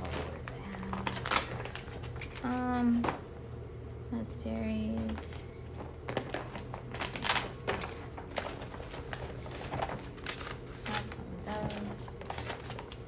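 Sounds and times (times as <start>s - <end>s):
paper rustling with taps: 0.0s - 3.2s, 4.9s - 13.0s
steady low hum: 0.0s - 13.0s.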